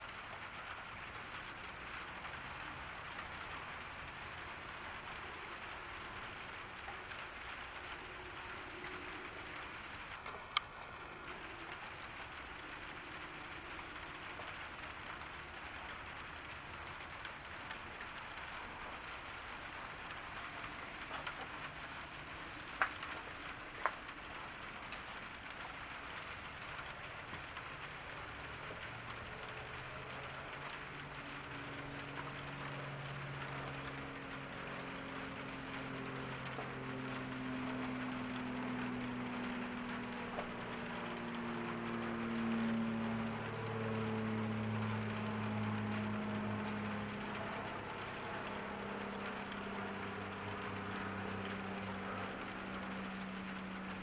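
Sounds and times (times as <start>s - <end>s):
rain falling on a garden: 0.0s - 54.0s
small bird chirping: 1.0s - 1.2s, 2.4s - 2.7s, 3.5s - 3.8s, 6.9s - 7.1s, 25.9s - 26.2s
water drip clicks: 22.8s - 53.8s.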